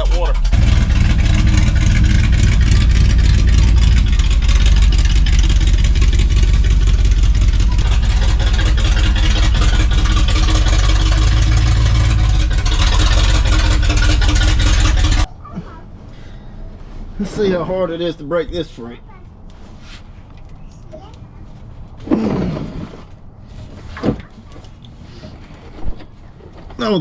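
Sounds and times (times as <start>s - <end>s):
engine running at fast idle: 0.0s - 15.3s.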